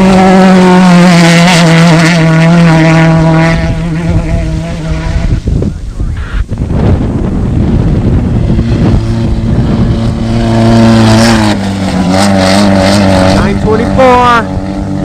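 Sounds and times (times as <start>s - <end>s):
engine running at high revs: 0.0s - 15.0s.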